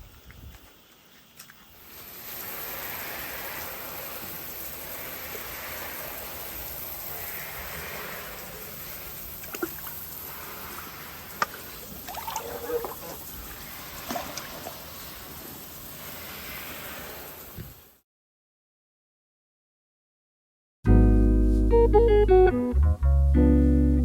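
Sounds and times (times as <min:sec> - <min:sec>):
rushing water: 0:01.8 - 0:18.0.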